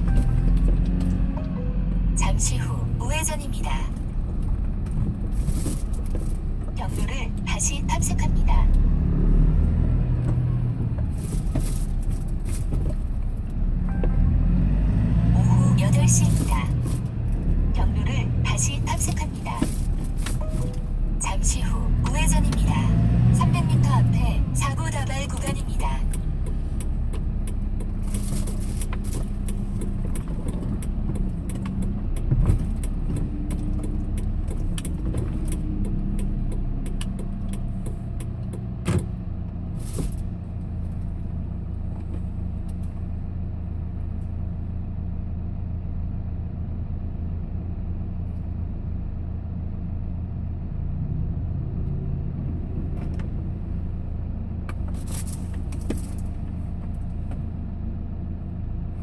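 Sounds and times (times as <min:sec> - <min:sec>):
engine and road noise in cabin: 0:00.0 - 0:59.0
vehicle bump: 0:10.1 - 0:14.4.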